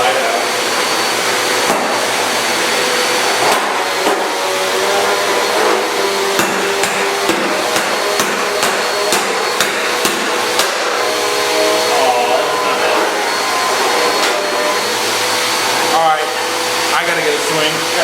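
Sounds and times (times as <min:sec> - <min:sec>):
vacuum cleaner motor running: 0:00.0 - 0:18.0.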